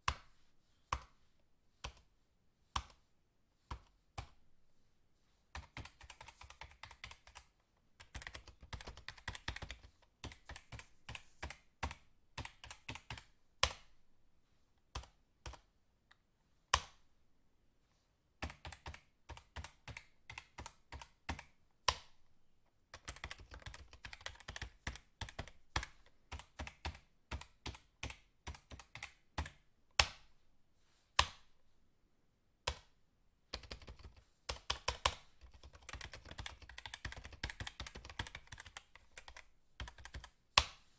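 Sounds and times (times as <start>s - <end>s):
fast typing on keyboard: 5.6s - 13.3s, 18.4s - 21.5s, 22.9s - 29.6s, 33.5s - 40.4s.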